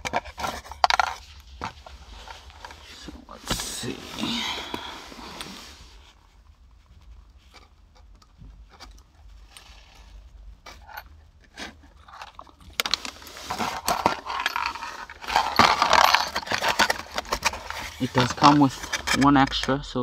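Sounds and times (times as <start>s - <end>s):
small metal parts clicking and rattling: 0.0s - 1.6s, 7.4s - 19.8s.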